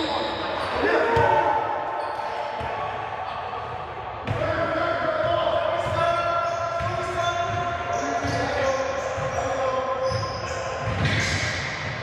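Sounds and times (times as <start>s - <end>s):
shoes squeaking on court: 2.0s - 2.7s, 7.9s - 11.6s
basketball bouncing on court: 5.2s - 9.4s.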